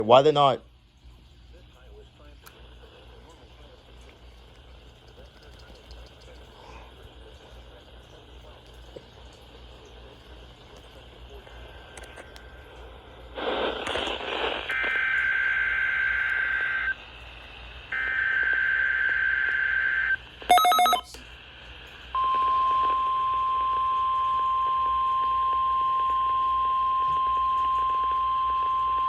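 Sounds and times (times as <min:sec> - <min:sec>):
steady warning alarm tone: 0:14.7 - 0:17.0, 0:17.9 - 0:21.1, 0:22.2 - 0:29.0
stacked beeps: 0:20.5 - 0:21.1.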